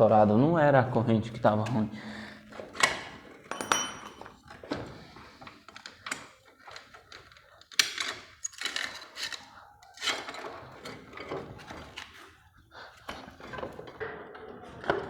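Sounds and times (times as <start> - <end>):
metallic clanks of tools: 2.8 - 4.4.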